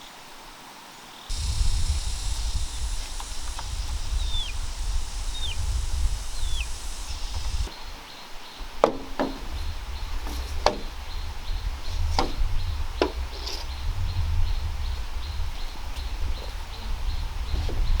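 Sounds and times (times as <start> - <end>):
faint high ticking: 1.3 - 7.7
chopping strikes on bamboo: 8.8 - 9.5, 12.2 - 12.4.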